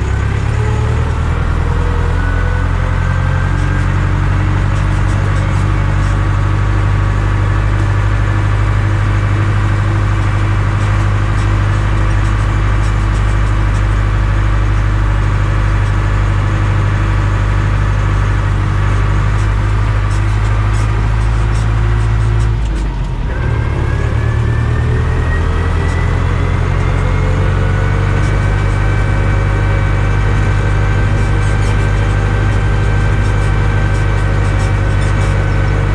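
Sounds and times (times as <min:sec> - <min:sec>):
rising engine whine: 0:00.0 - 0:35.9
tractor diesel engine running: 0:00.0 - 0:35.9.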